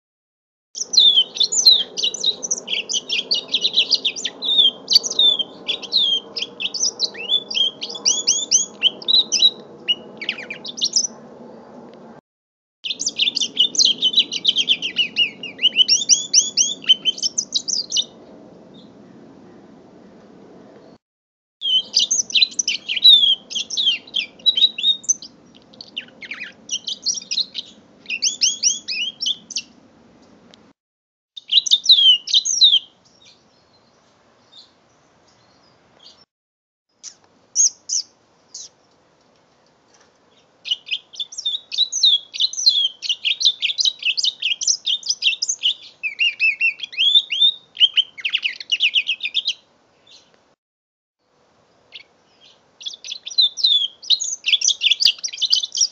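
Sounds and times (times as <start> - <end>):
canary singing trilled phrases: 0.8 - 11.2, 12.8 - 18.2, 21.6 - 29.8, 31.4 - 33.4, 36.9 - 38.8, 40.6 - 49.6, 51.9 - 55.9.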